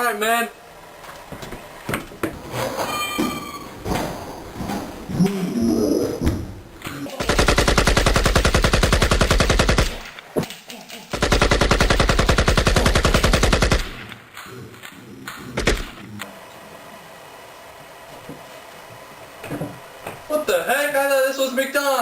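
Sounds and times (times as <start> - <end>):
rapid machine-gun fire: 7.2 - 10.1, 11.1 - 14.4.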